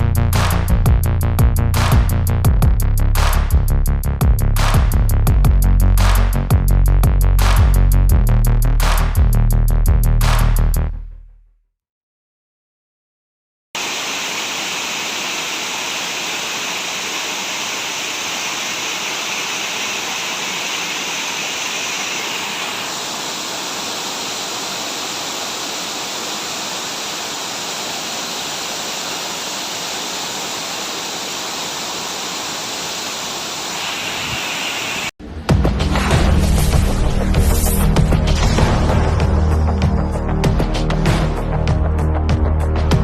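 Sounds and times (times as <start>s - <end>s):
falling water rushing: 13.8s - 35.2s.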